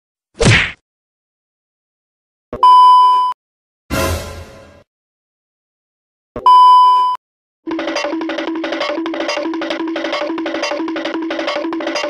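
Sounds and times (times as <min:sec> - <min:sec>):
censor bleep: 0:02.6 - 0:03.4, 0:06.5 - 0:07.2
repeating music loop: 0:07.7 - 0:12.0.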